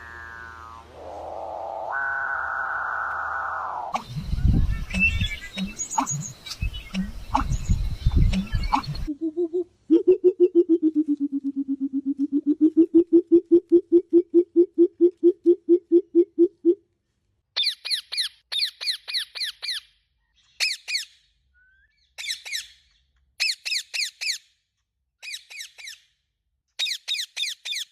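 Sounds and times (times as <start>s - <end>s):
bird low pulsed notes: 0.0s - 9.1s.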